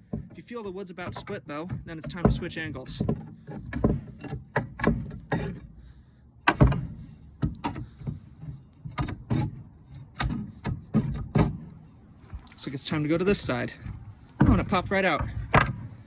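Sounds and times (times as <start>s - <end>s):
pry bar knocking on wood: 1.0s - 5.5s.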